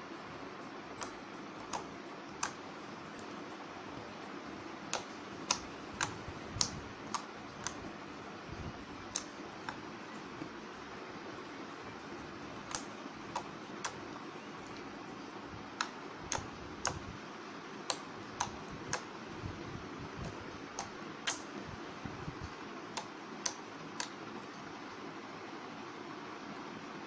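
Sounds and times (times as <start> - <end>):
steady background hiss: 0.0 - 27.0
sharp clicks: 1.0 - 2.6, 4.9 - 7.9, 9.0 - 9.8, 12.6 - 14.0, 15.8 - 17.0, 17.9 - 19.1, 20.7 - 21.5.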